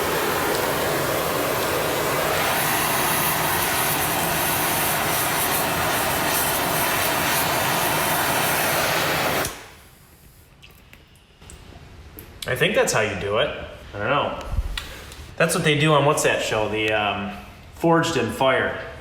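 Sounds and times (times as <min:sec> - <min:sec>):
gas torch flame hissing: 0:00.0 - 0:10.4.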